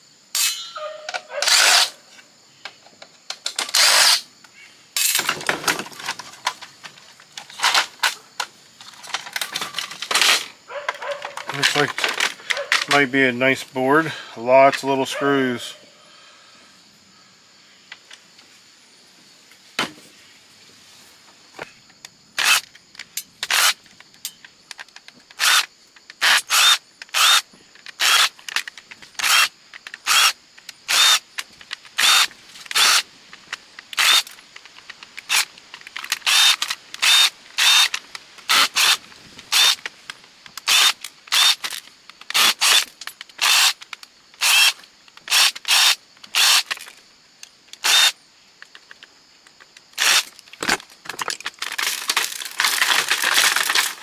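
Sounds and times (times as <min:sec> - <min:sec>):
electric screwdriver running in bursts: 0:22.4 - 0:22.6, 0:25.4 - 0:25.6, 0:26.2 - 0:28.4, 0:29.2 - 0:31.2, 0:32.0 - 0:33.0, 0:34.0 - 0:34.3, 0:35.3 - 0:35.5, 0:36.2 - 0:39.8, 0:40.6 - 0:43.8, 0:44.4 - 0:46.8, 0:47.8 - 0:48.1, 0:50.0 - 0:50.2.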